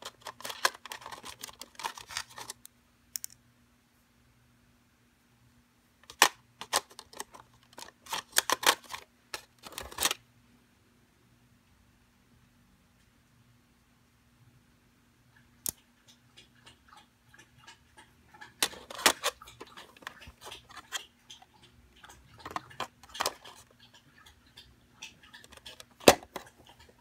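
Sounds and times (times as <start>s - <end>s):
small tools clicking and clacking: 0.0s - 3.4s, 6.0s - 10.2s, 18.4s - 24.0s, 25.0s - 27.0s.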